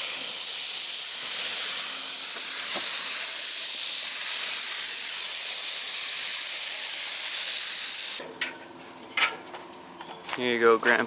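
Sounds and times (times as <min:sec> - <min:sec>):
paint spray gun hissing: 0:00.0 - 0:08.2.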